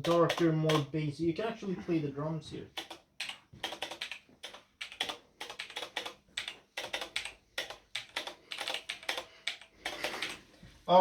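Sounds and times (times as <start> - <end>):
mechanical keyboard clicks: 0.0 - 0.9, 2.8 - 10.4.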